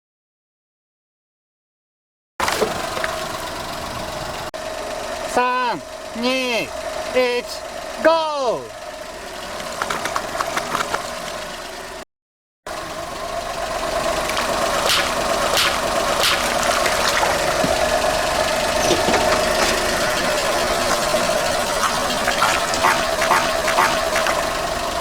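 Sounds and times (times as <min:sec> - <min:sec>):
car engine running at low speed: 0:02.4 - 0:12.0, 0:12.7 - 0:25.0
tyres crackling: 0:09.2 - 0:11.2, 0:13.8 - 0:25.0.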